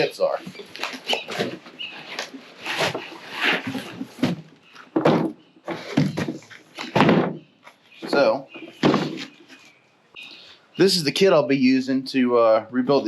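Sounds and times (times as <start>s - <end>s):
boxes knocking and scraping: 0.0s - 9.7s.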